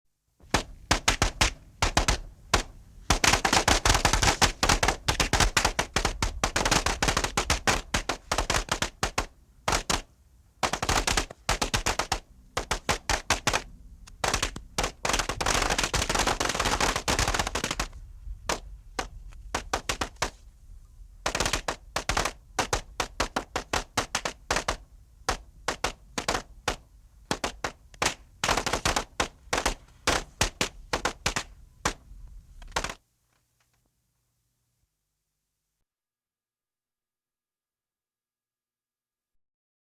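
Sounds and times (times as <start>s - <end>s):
fireworks bangs: 0.4s - 20.5s, 21.2s - 33.0s.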